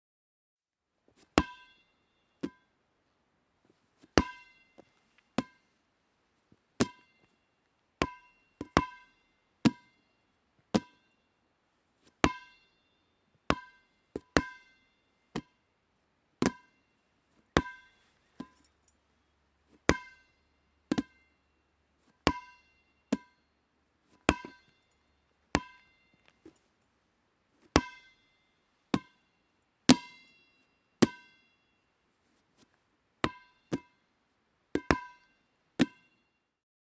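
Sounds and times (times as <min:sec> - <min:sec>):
ball bouncing: 0:04.0 - 0:05.6, 0:06.8 - 0:07.3, 0:08.0 - 0:09.0, 0:09.6 - 0:09.9, 0:10.7 - 0:11.0, 0:16.4 - 0:16.7, 0:17.6 - 0:18.7, 0:19.7 - 0:20.2, 0:20.9 - 0:21.2, 0:22.2 - 0:23.4, 0:24.2 - 0:24.7, 0:25.5 - 0:26.6, 0:33.3 - 0:33.9, 0:34.8 - 0:35.2, 0:35.8 - 0:36.0.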